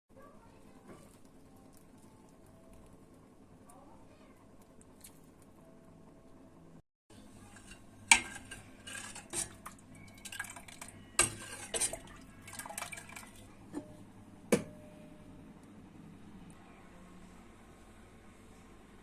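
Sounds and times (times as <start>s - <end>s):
dishes and cutlery clinking: 7.4s - 14.0s.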